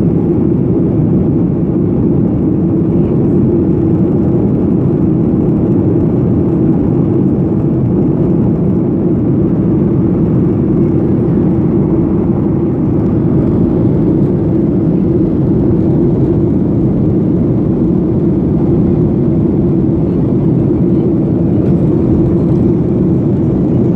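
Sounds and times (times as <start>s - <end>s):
airliner engine drone in cabin: 0.0s - 23.9s.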